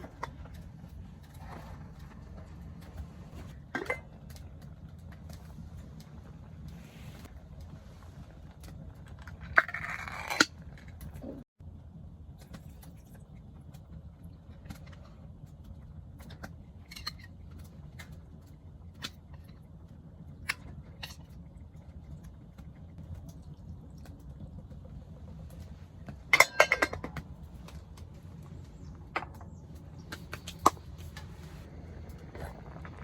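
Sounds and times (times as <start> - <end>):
dishes and utensils clinking: 26.3 - 27.2
dishes clattering: 26.3 - 27.3.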